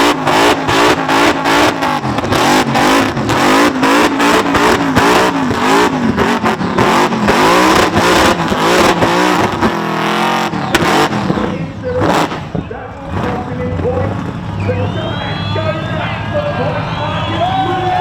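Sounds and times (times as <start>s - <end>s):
engine revving hard: 0.0s - 13.6s.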